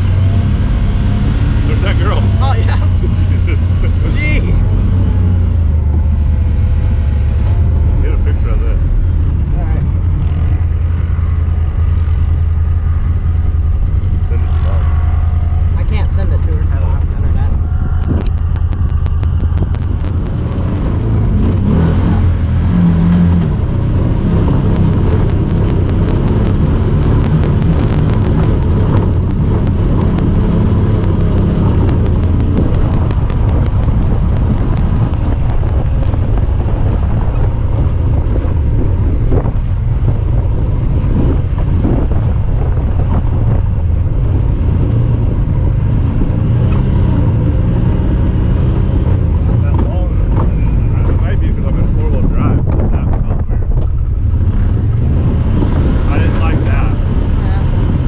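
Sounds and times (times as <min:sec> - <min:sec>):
vehicle engine droning: 0:00.0 - 0:58.0
rapid high clicking: 0:17.8 - 0:21.7, 0:24.3 - 0:38.2.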